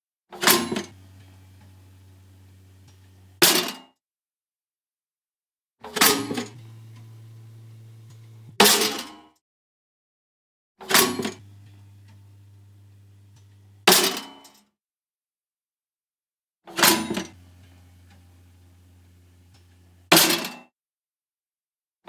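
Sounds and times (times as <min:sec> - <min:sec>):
toaster electrical hum: 0:00.5 - 0:03.4, 0:06.1 - 0:08.7, 0:10.9 - 0:14.0, 0:16.9 - 0:20.4.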